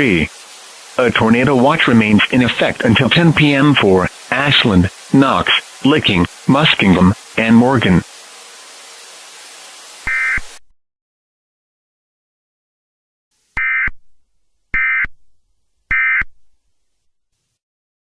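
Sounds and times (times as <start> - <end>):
static hiss: 0.0 - 10.7, 13.3 - 13.9.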